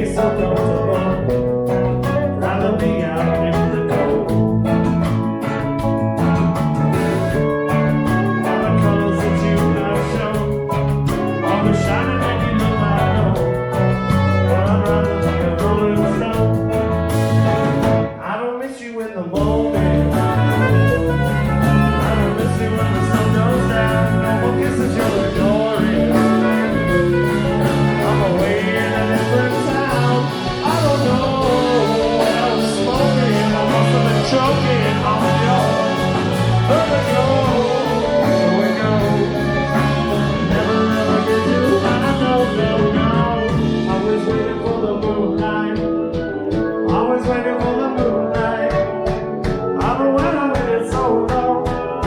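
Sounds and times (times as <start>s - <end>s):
person singing: 0.0s - 17.5s, 18.2s - 52.0s
steady drum beat: 0.0s - 18.1s, 19.4s - 52.0s
bass guitar: 0.0s - 18.4s, 19.3s - 52.0s
electric guitar: 0.0s - 18.4s, 19.3s - 52.0s.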